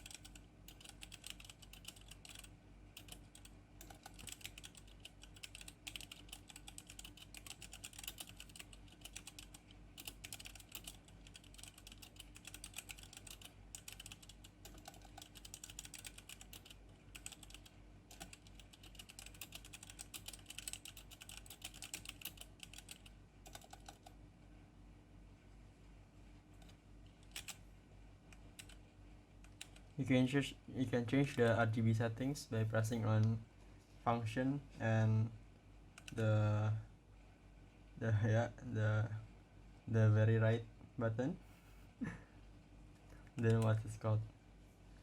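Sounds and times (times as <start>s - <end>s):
mechanical keyboard typing: 0.0s - 24.2s, 27.2s - 27.6s, 28.4s - 28.8s, 29.5s - 29.9s.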